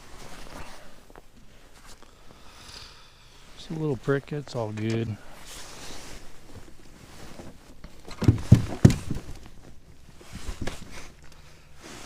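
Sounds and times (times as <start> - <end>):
heavy thumps: 8.0 - 9.7.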